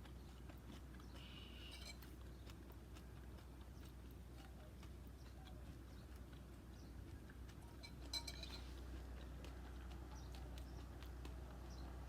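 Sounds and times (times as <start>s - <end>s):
low steady hum: 0.0s - 12.0s
spoon clicking against bowl: 7.8s - 8.6s.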